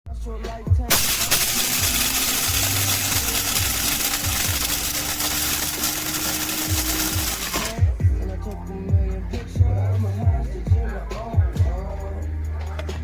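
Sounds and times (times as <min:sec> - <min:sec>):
coffee grinder whirring: 0:00.9 - 0:07.8.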